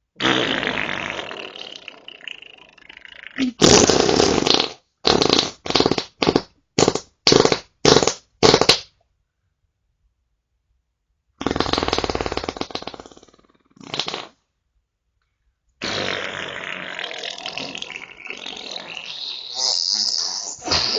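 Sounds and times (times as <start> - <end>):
farts: 0.2 - 8.9, 11.4 - 14.4, 15.8 - 20.9.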